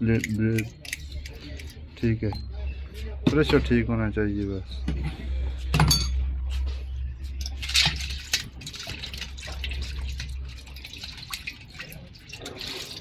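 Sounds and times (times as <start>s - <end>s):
liquid dripping and trickling: 0.0s - 2.4s, 7.3s - 13.0s.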